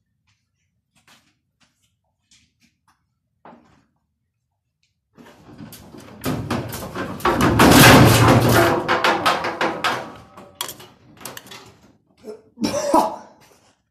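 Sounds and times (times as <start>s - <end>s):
washing machine banging and rattling: 5.2s - 11.9s.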